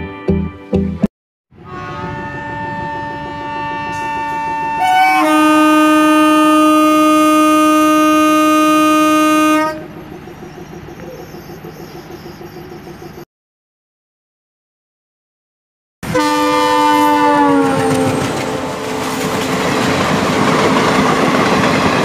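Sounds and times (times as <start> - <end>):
pulsing train rumble: 1.5 - 13.2, 16.0 - 22.0
train horn blowing: 1.6 - 9.9, 16.0 - 19.7.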